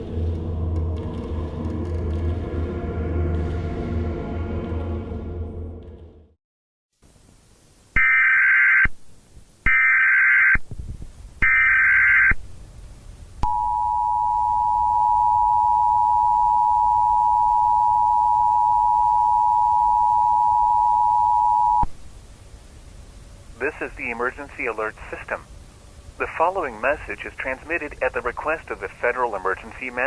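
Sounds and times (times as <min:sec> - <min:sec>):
two-tone attention signal: 0:13.4 - 0:21.9.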